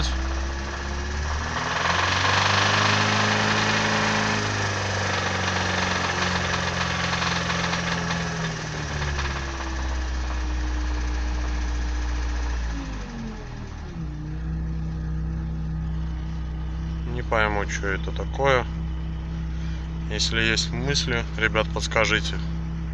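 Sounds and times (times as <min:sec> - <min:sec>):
engine knocking rattle: 0:00.0 - 0:13.9
car engine revving: 0:00.0 - 0:22.9.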